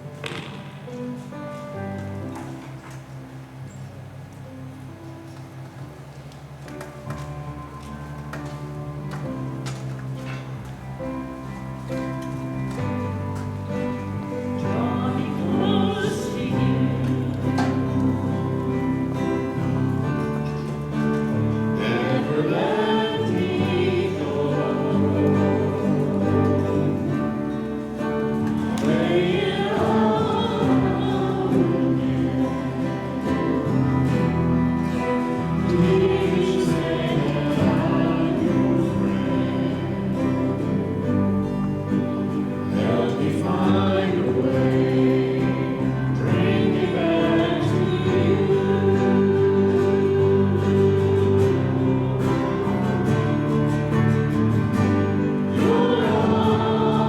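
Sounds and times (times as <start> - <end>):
worship band playing: 0.0 - 57.0
voices singing: 11.4 - 57.0.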